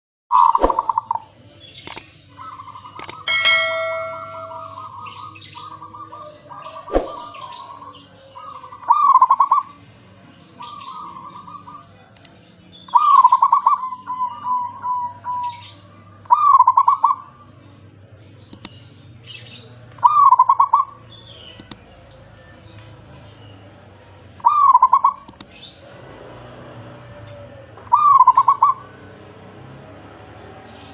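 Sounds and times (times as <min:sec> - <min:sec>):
sharp click: 0:03.0 - 0:04.6, 0:18.5 - 0:18.7, 0:21.6 - 0:21.8, 0:25.3 - 0:25.5.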